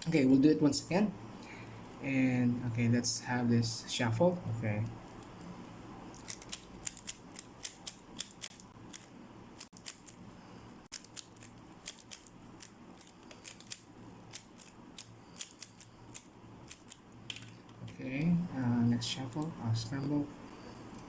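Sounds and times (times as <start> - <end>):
faint low hum: 0.0 - 21.0
puzzle cube layers clicking: 10.9 - 17.5.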